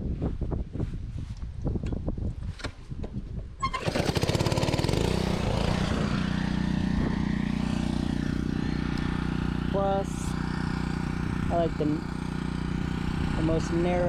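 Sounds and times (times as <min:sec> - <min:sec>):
pressure washer running: 0:03.9 - 0:14.0.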